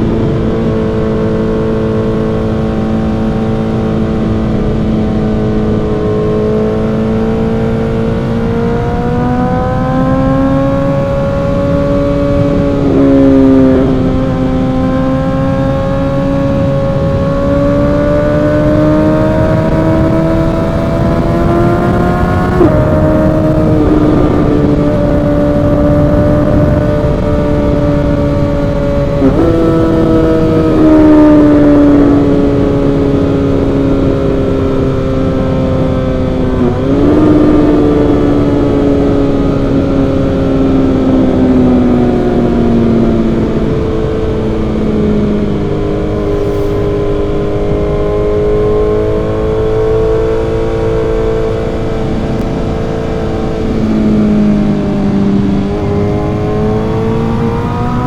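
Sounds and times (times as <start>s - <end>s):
motorcycle engine revving: 0.0s - 58.0s
wind rushing: 10.0s - 34.2s, 43.5s - 50.6s.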